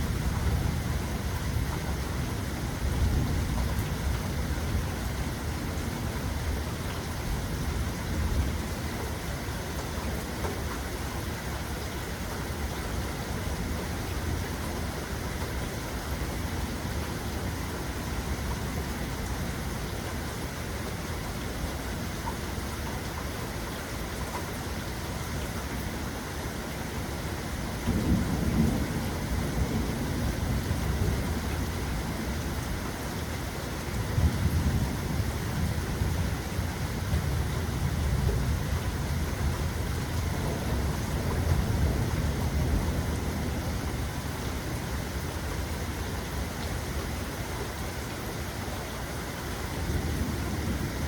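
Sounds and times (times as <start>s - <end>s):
steady rain falling: 0.0s - 51.0s
rolling thunder: 27.8s - 32.3s, 34.0s - 44.2s.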